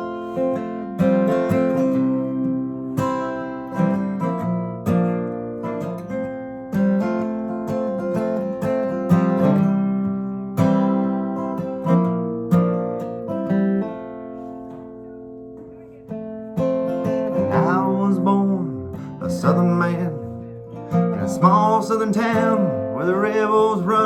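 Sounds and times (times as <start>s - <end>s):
acoustic guitar chords: 0.0s - 24.0s.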